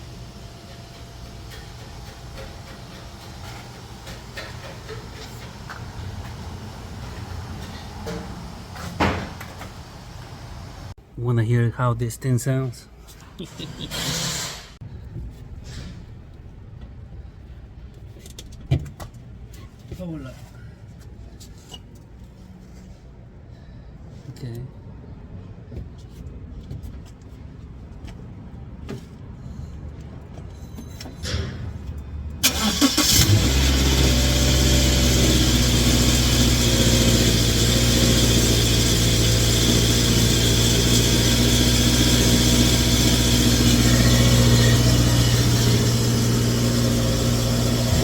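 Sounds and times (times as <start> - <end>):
car engine starting and idling: 32.4 - 48.0.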